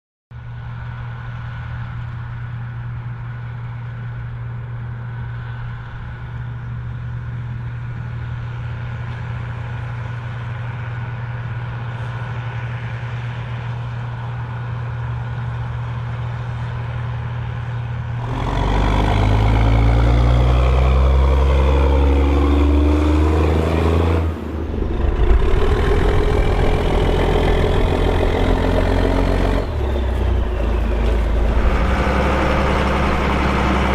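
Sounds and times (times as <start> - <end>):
tractor diesel engine revving: 14.7 - 33.9.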